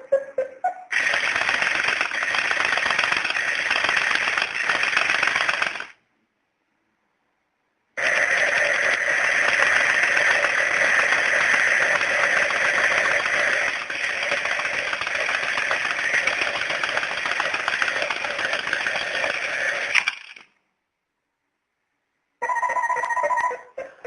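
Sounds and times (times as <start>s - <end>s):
alarm clock rattling ring: 8.0s - 19.9s.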